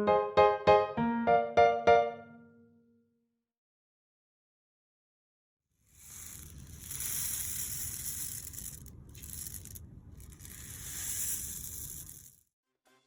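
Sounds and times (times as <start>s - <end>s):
rain stick rice trickling: 5.9s - 12.4s.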